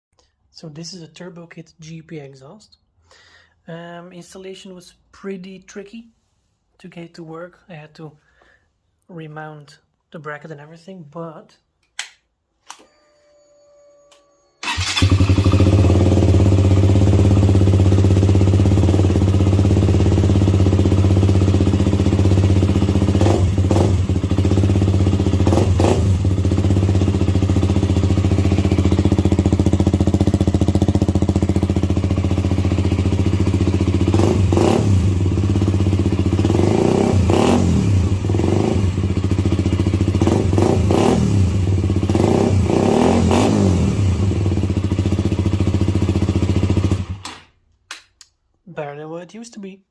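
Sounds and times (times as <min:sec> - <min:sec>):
motorcycle engine starting and idling: 0:14.6 - 0:47.6.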